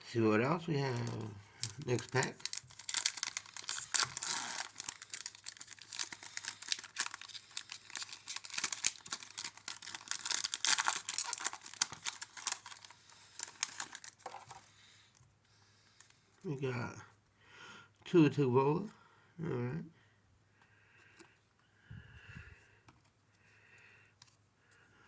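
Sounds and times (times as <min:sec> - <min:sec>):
plastic wrapper tearing and crinkling: 0:00.8 - 0:14.7.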